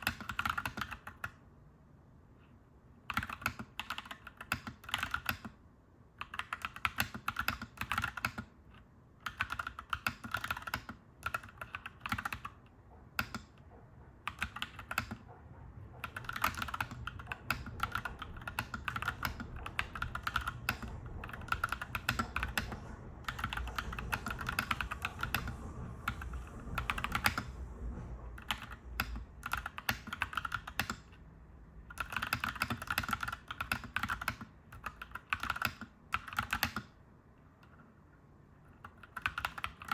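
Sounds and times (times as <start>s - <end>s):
mechanical keyboard typing: 0.0s - 1.4s, 3.0s - 5.6s, 6.2s - 13.6s, 14.2s - 15.3s, 16.0s - 27.5s, 28.4s - 31.2s, 31.8s - 37.0s, 38.7s - 39.9s
low rumble: 17.6s - 29.5s.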